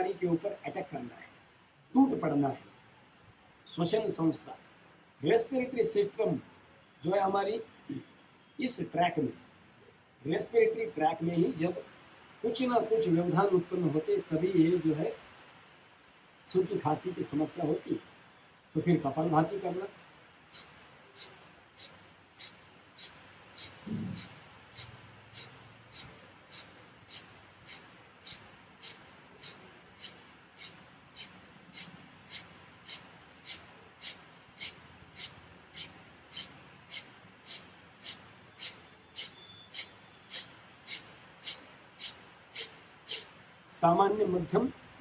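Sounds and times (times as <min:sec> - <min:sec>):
man exhaling forcefully through nose: 0:20.6 - 0:43.3.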